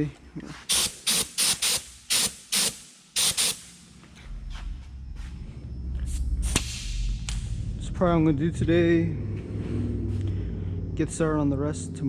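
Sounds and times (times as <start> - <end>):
pressurised spray hissing: 0.7 - 3.8
low rumble: 4.2 - 12.0.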